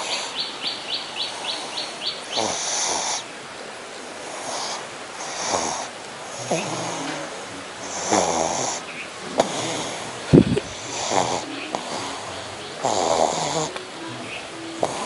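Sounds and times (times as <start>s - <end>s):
dog snoring breaths: 4.3s - 7.2s, 7.8s - 8.8s, 9.4s - 12.0s.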